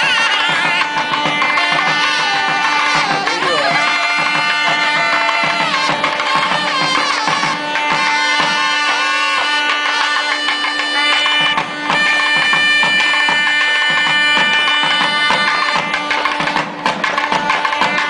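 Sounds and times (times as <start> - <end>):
held melody: 0.0 - 16.4
drums beating a rhythm: 0.0 - 18.0.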